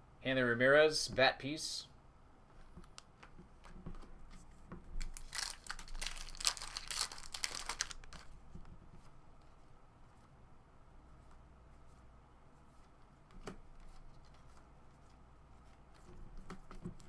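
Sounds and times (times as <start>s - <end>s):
foil wrapper tearing and crinkling: 5.0s - 8.3s.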